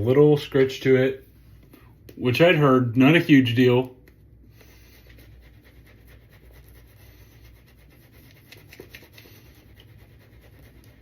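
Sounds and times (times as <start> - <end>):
shaving brush swishing lather: 4.6 - 11.0.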